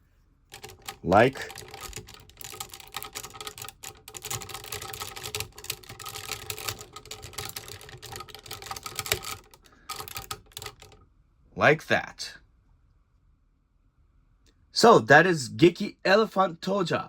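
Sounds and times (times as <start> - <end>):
plastic toy parts clicking: 0.5 - 11.0.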